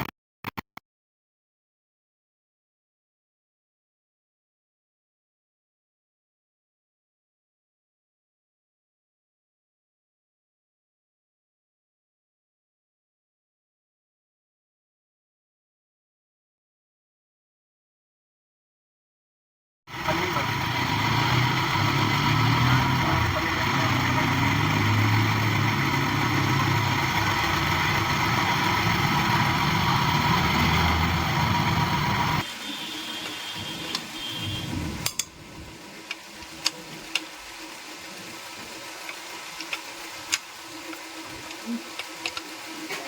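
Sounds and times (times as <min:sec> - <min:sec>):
workshop sounds: 0:19.9 - 0:32.4, 0:33.2 - 0:37.3
machine whining: 0:19.9 - 0:43.0.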